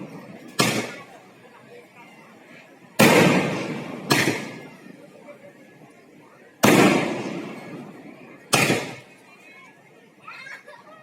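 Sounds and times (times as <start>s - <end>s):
fireworks bangs with rumbling echo: 0.4s - 1.2s, 3.0s - 4.8s, 6.6s - 9.2s.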